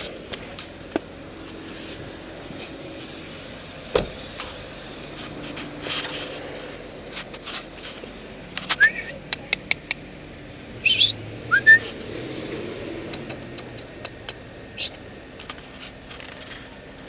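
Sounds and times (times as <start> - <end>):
car interior hum: 0.0 - 17.0
thump: 3.9 - 4.2.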